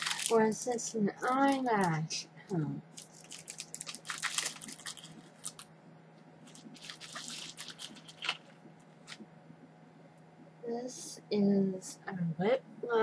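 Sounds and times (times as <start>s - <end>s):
plastic packaging crinkling: 0.0s - 2.0s, 2.9s - 5.7s, 6.4s - 9.2s.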